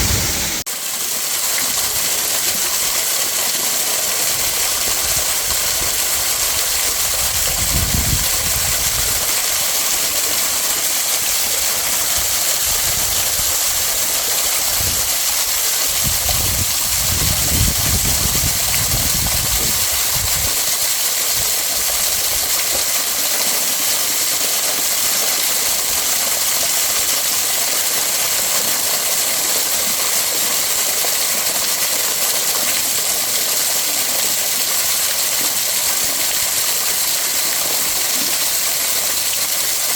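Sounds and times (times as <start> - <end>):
low rumble: 0.0 - 0.6
waterfall rushing: 0.0 - 39.9.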